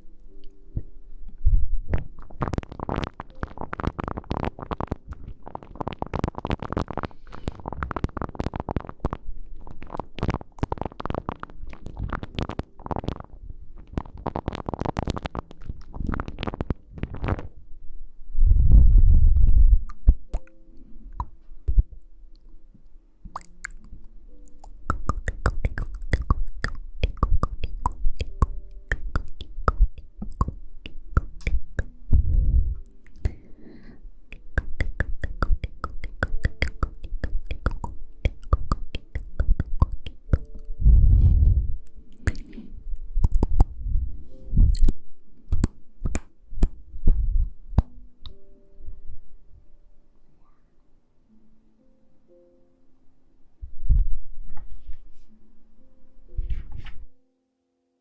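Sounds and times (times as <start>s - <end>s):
scratchy rustling on microphone: 1.8s - 17.6s, 18.5s - 19.9s, 40.3s - 41.8s, 53.9s - 55.4s, 56.3s - 57.2s.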